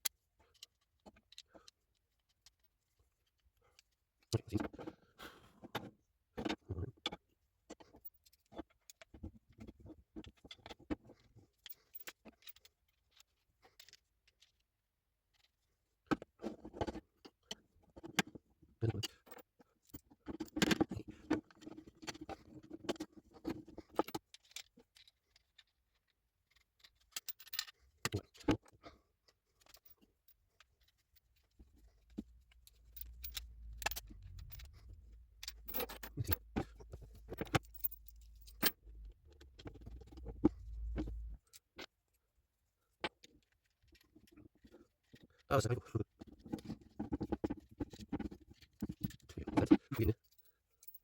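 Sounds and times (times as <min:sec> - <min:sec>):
low steady hum: 0:31.6 - 0:41.4.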